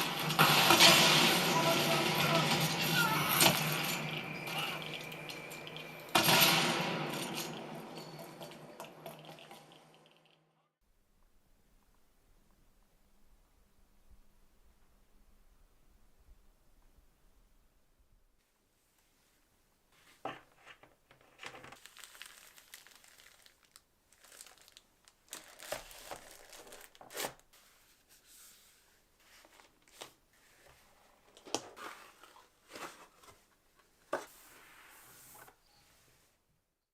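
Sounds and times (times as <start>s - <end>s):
packaging crinkling and rustling: 20.8s - 27.5s.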